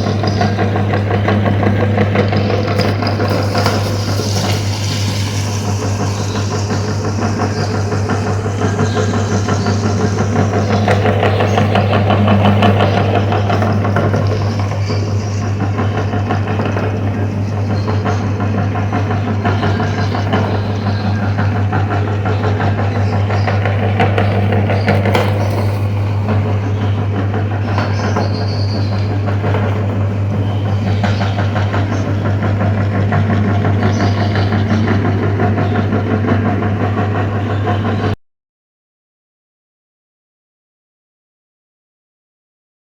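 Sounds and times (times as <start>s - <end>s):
meat grinder motor hum: 0.0s - 38.0s.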